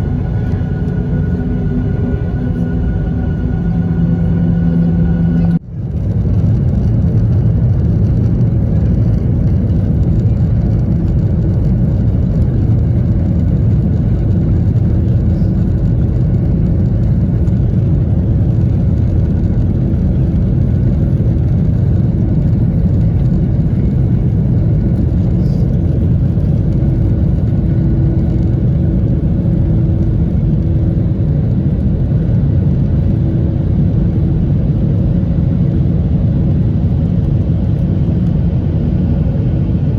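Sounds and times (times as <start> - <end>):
airflow: 0.0 - 5.6
faint steady hum: 0.0 - 5.6
airplane cabin engine rumble: 0.0 - 39.9.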